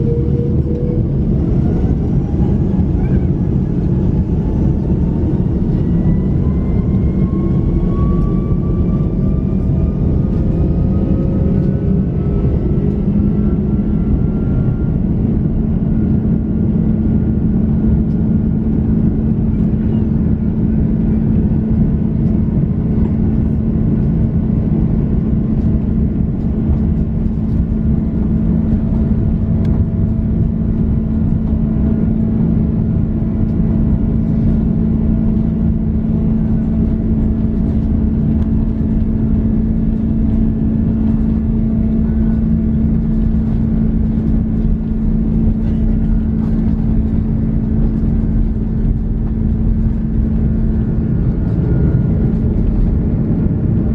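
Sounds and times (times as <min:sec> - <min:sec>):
jet engines droning in cabin: 0:00.0 - 0:53.9.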